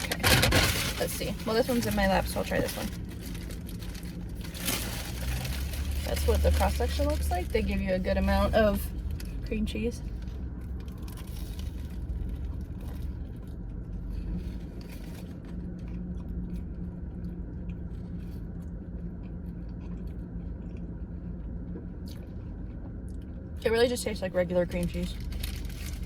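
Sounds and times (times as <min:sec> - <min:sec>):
steady low hum: 0:00.0 - 0:26.0
person chewing: 0:10.6 - 0:23.5.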